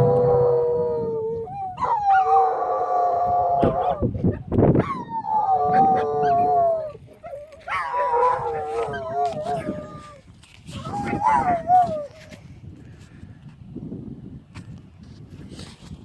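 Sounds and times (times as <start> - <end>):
dog howling: 0.0 - 10.2, 10.8 - 12.3.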